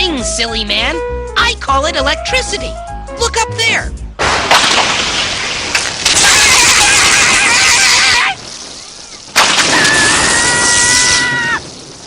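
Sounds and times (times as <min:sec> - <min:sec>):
electrical crackling and buzzing: 0:04.2 - 0:12.0.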